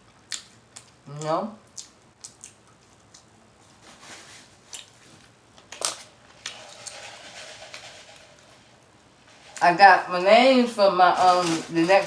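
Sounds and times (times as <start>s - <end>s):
chewing with wet mouth smacks: 0.0s - 3.4s.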